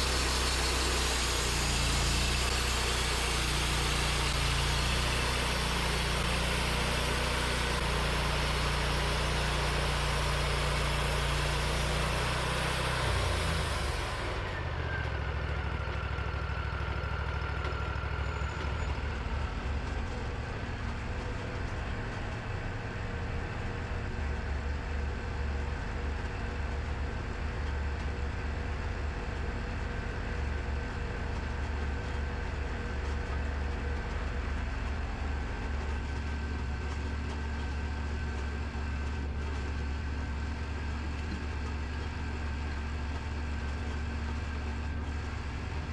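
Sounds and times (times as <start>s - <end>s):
saw blade cutting log: 0.0s - 14.4s
sawmill engine running: 0.0s - 45.9s.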